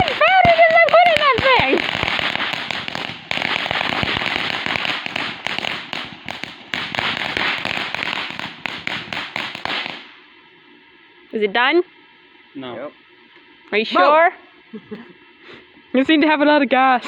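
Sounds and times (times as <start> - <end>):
firework crackling with rapid pops: 0.0 - 10.2.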